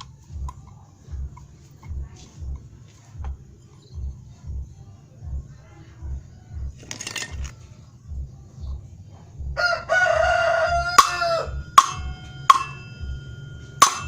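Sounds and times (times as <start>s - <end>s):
rooster crowing: 9.6s - 12.0s
sharp metallic knocks: 10.8s - 14.0s.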